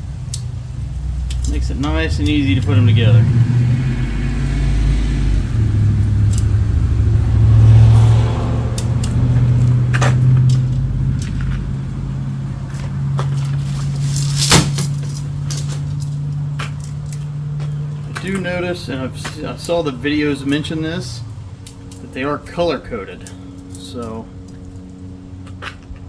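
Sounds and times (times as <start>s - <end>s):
low engine-like hum: 0.0s - 26.0s
tent pole sections clicking: 0.2s - 2.9s, 6.0s - 7.0s, 8.7s - 11.8s, 12.7s - 18.6s.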